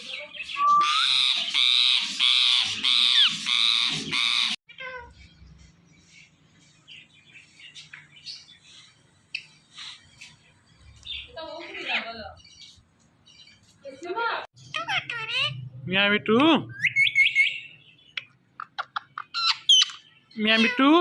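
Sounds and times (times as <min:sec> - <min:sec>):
parrot screeching: 0:00.6 - 0:05.1.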